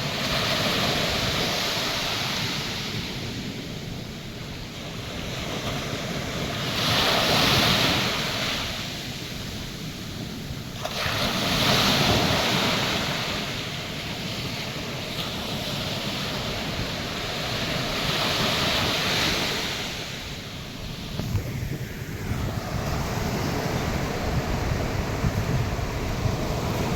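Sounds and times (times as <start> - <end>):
surf waves crashing on beach: 0.0 - 26.9
wind buffeting microphone: 0.0 - 26.9.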